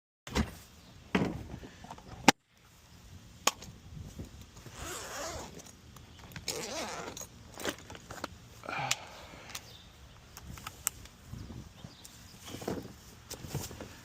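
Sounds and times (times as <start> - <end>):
scraping and rustling handling noise: 10.3 - 14.0.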